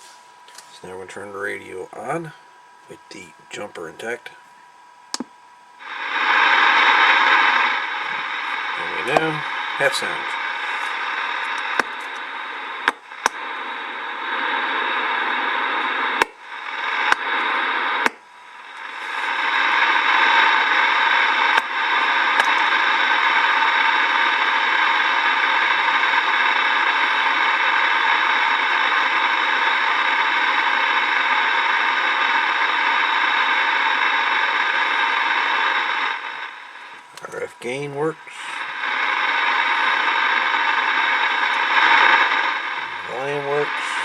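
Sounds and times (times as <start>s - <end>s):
radio static hiss: 0.0s - 44.0s
radio control clicks: 5.1s - 20.5s, 21.4s - 22.8s.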